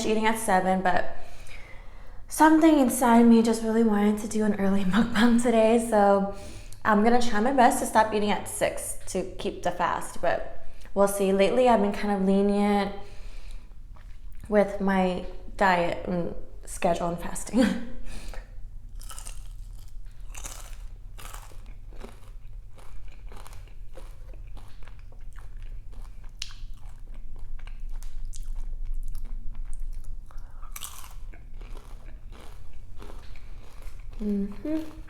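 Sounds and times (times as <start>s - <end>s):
crunchy bites and chewing: 18.9s - 34.2s.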